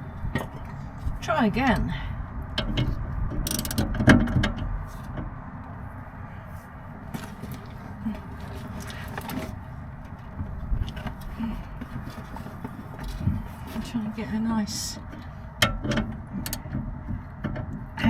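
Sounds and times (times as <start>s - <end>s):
wind buffeting microphone: 0.0s - 18.0s
metal clicks and knocks: 2.5s - 5.7s, 15.0s - 18.0s
ratchet clattering on bolt: 2.6s - 5.3s, 15.1s - 17.8s.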